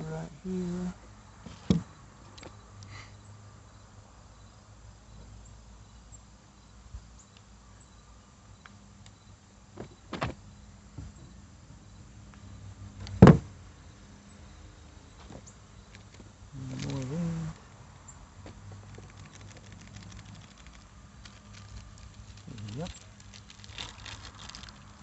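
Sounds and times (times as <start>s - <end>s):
faint steady low hum: 0.0s - 25.0s
clicks and knocks of wiring parts: 18.8s - 25.0s.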